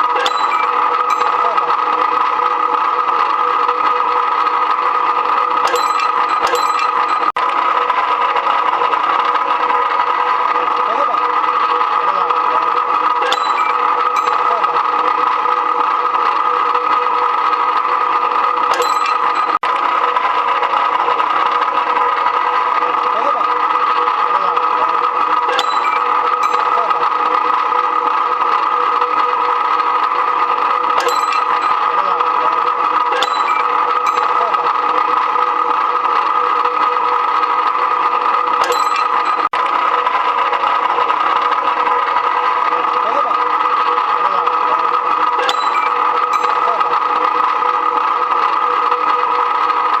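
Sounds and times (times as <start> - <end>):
metallic clatter: 0.0 - 2.1, 5.6 - 7.4, 13.2 - 14.8, 18.7 - 19.6, 25.5 - 27.2, 30.9 - 34.8, 38.6 - 39.6, 45.4 - 47.0
electric motor and gear drive running: 0.0 - 50.0.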